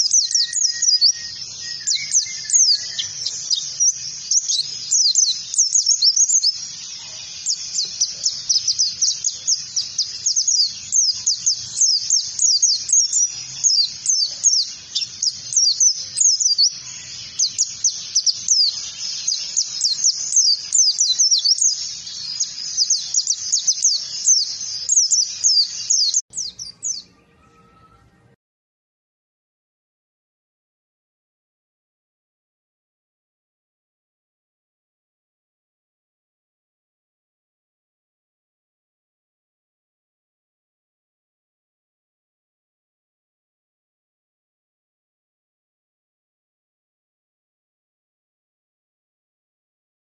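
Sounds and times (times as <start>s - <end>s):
white-eye bird singing: 0.0s - 28.3s.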